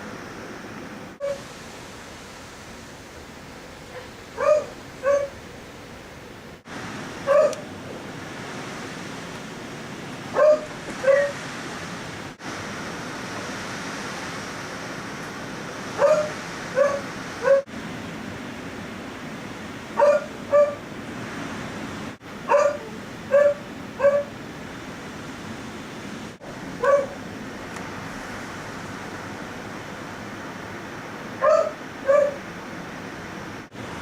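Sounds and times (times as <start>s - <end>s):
dog barking: 3.9s - 5.4s, 7.3s - 7.7s, 10.3s - 11.4s, 16.0s - 17.7s, 20.0s - 20.8s, 22.5s - 24.3s, 26.8s - 27.2s, 31.4s - 32.4s.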